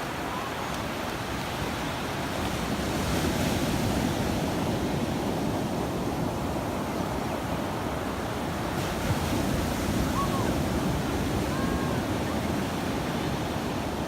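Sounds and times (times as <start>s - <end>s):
sea waves washing onto beach: 0.0s - 14.0s.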